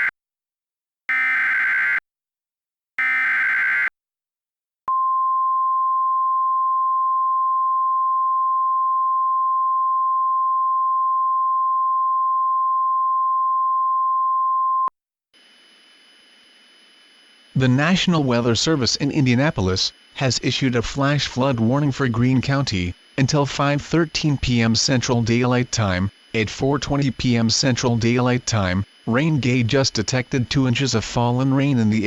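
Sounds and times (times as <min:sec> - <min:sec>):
buzzy data bursts: 0:15.4 - 0:32.0
steady pure alert tone: 0:17.5 - 0:32.0.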